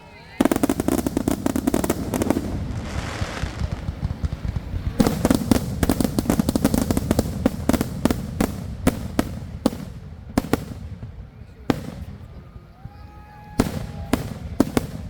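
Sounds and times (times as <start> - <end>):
fireworks cracking and banging: 0.1 - 15.0
firework hiss: 0.4 - 11.1
steady low rumble: 0.6 - 12.4.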